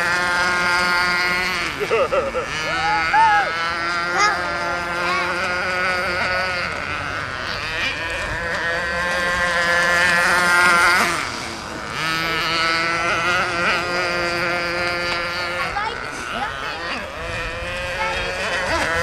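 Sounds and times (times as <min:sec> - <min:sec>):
motorboat engine drone: 0:00.0 - 0:19.0.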